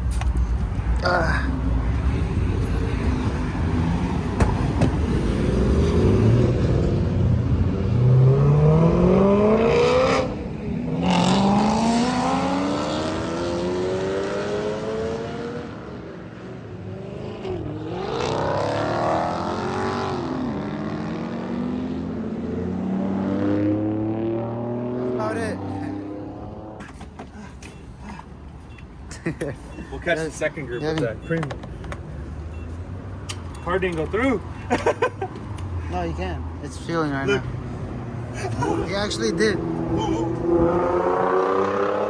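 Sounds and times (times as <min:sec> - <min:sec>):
sports cars accelerating hard: 0:02.9 - 0:26.8, 0:37.4 - 0:42.0.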